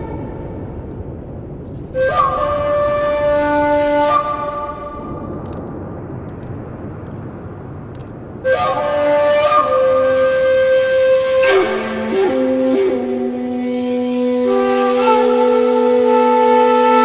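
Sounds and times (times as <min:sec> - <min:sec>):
soft hiss: 0:00.0 - 0:17.0
melody of long held notes: 0:08.5 - 0:17.0.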